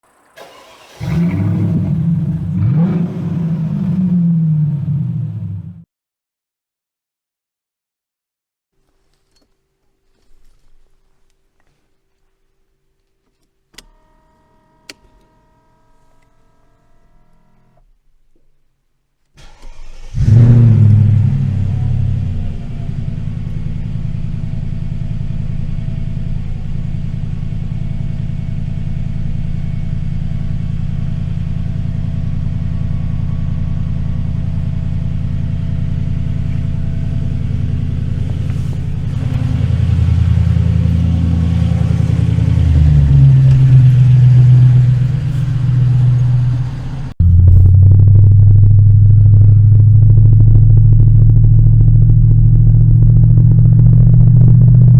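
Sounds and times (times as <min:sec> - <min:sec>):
car engine starting and idling: 0:00.0 - 0:05.8, 0:19.4 - 0:54.9.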